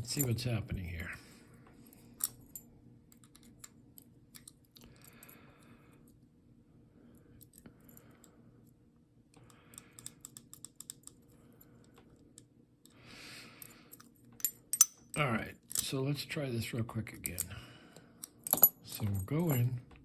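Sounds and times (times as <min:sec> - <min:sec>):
small metallic clicks from padlock: 0:09.7 - 0:11.2.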